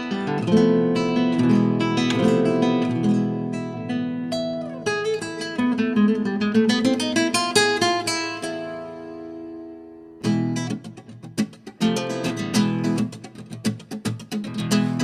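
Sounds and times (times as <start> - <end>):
acoustic guitar music: 0.0 - 15.0.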